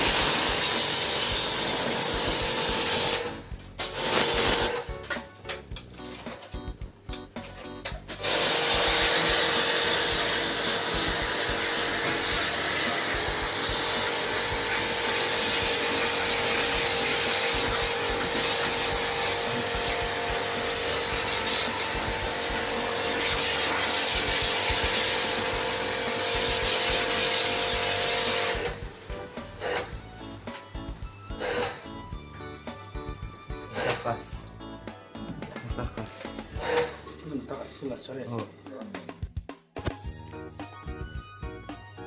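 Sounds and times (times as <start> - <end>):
power tool whining: 8.0 - 30.7, 31.3 - 32.4, 36.3 - 37.6.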